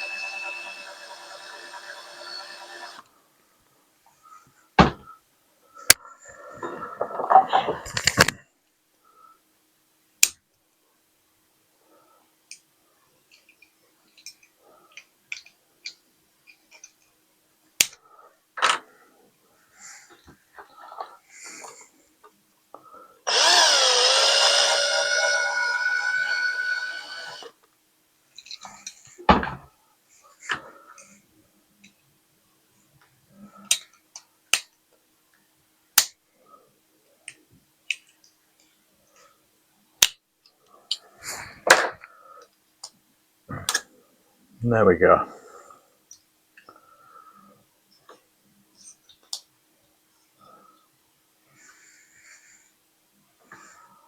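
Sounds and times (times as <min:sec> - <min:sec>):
toy truck parts clicking: 0:13.3 - 0:17.1, 0:23.3 - 0:27.5.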